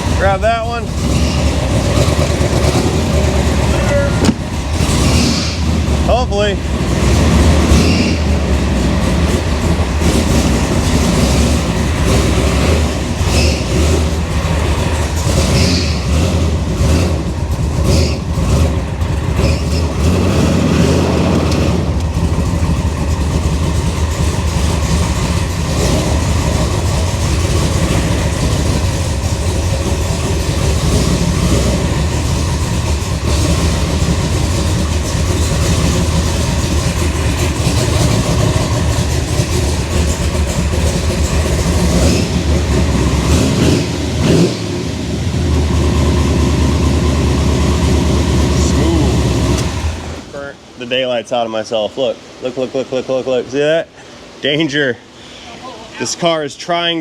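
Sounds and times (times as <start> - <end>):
car engine running steadily: 0.0 - 51.2.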